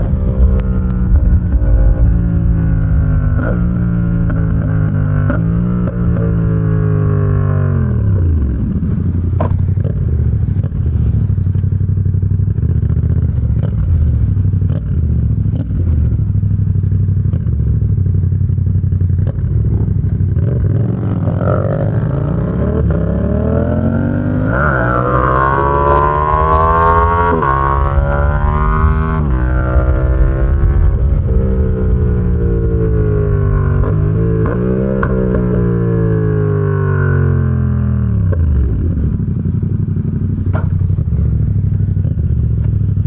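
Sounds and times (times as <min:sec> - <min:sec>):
motorcycle engine accelerating: 0:00.0 - 0:43.0.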